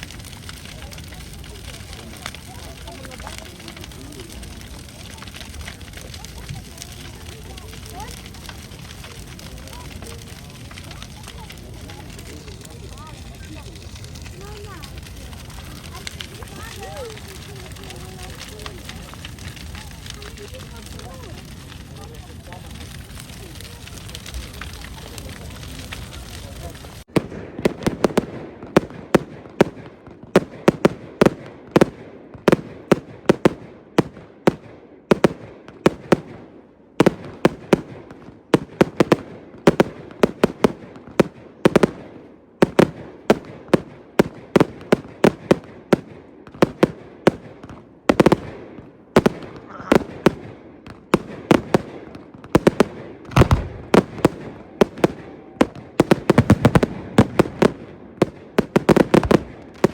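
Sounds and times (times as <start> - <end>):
fireworks bangs and cracks: 0.0 - 59.9.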